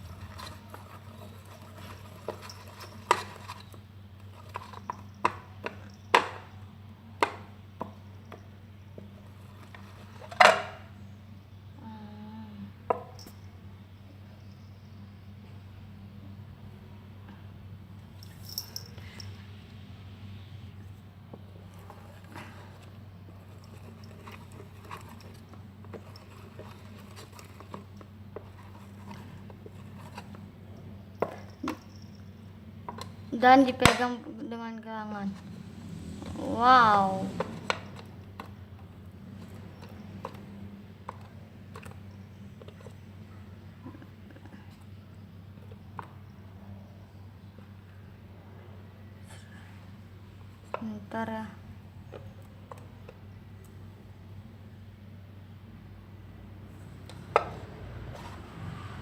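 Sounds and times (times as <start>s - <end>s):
containers and utensils clicking: 0.0s - 6.5s, 21.7s - 30.5s
faint low hum: 0.0s - 59.0s.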